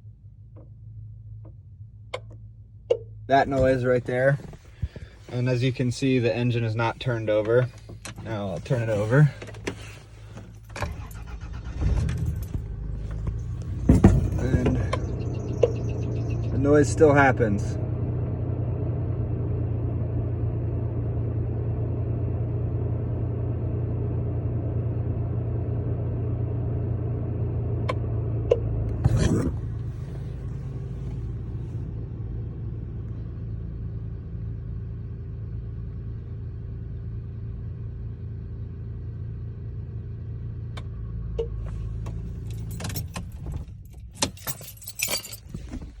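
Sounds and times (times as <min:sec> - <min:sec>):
car engine idling: 0:00.0 - 0:46.0
keys jangling: 0:42.4 - 0:46.0.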